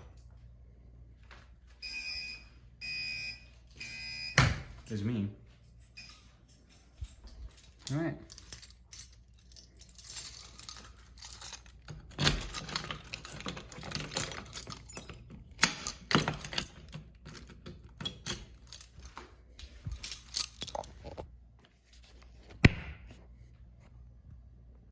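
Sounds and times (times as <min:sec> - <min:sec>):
keys jangling: 0:05.5 - 0:21.2.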